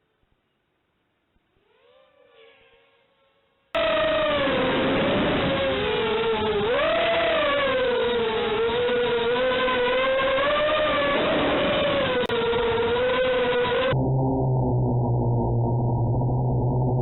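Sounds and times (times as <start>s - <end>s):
model aircraft motor whine: 3.8s - 14.0s.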